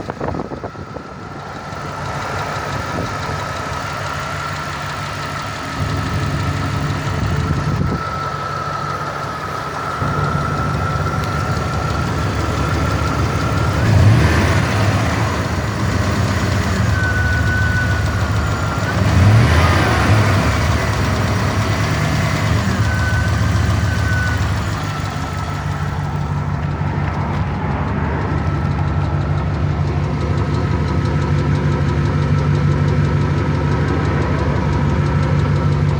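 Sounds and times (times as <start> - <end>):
knocking engine idling: 0.0 - 35.9
engine revving: 1.1 - 35.9.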